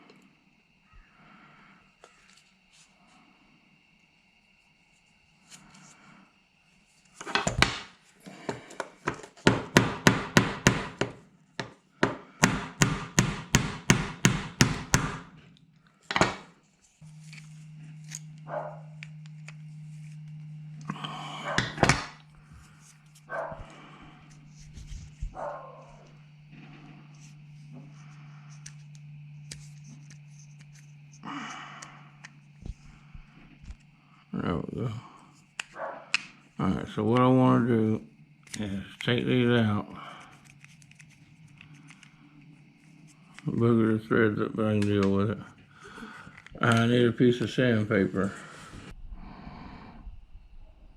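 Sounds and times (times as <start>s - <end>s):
steady low hum: 0.0s - 50.9s
hammer blows: 9.5s - 15.4s.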